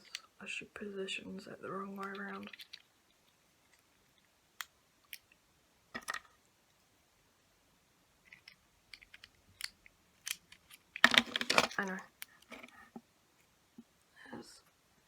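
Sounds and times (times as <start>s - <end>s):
plastic model parts clicking: 2.0s - 5.4s, 6.0s - 6.4s, 8.2s - 12.8s.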